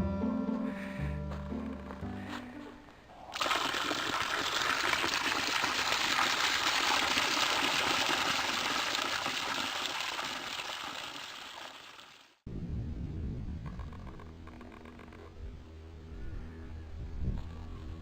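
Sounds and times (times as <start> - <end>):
running water rushing: 3.3 - 12.4.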